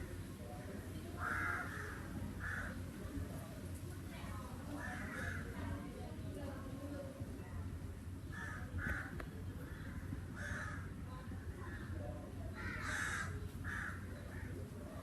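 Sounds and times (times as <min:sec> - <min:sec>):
crow cawing: 0:01.2 - 0:02.8, 0:04.8 - 0:05.5, 0:10.4 - 0:10.9, 0:12.6 - 0:14.1.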